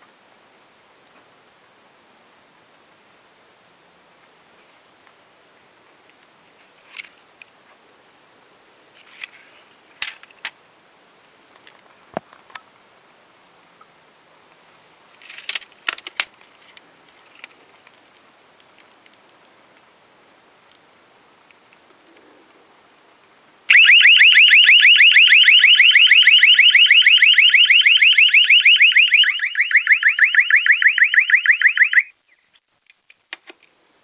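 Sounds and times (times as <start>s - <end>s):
faint steady hiss: 0.0s - 34.0s
handling rustles: 15.1s - 19.4s.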